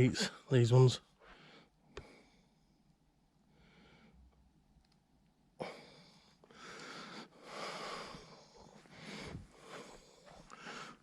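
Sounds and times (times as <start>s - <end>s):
person breathing hard: 3.4s - 4.3s, 5.6s - 11.0s.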